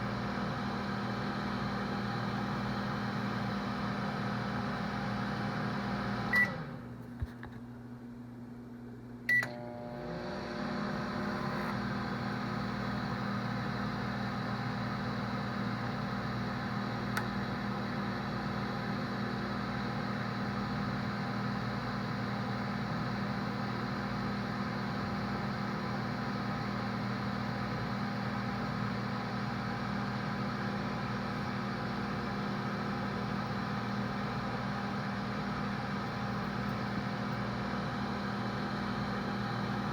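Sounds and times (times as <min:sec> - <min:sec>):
microwave oven humming: 0:00.0 - 0:39.9
microwave beep: 0:05.9 - 0:06.8, 0:09.3 - 0:10.1
microwave click: 0:09.3 - 0:09.8, 0:17.0 - 0:17.7.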